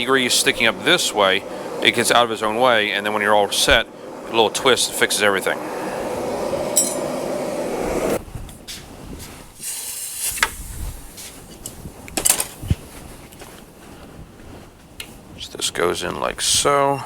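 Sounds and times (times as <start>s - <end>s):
forge roaring: 0.0s - 8.4s.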